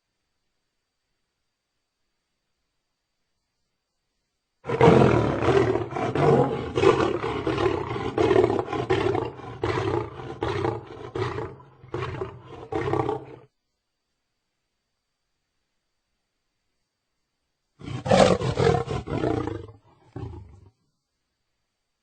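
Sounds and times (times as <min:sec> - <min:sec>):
lion roaring: 0:04.6 - 0:13.5, 0:17.8 - 0:20.7.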